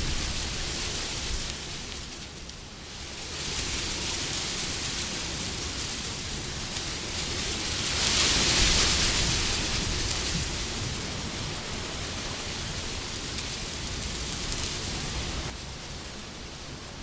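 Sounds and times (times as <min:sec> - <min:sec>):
wind gusting: 0:00.0 - 0:01.8, 0:07.0 - 0:17.0.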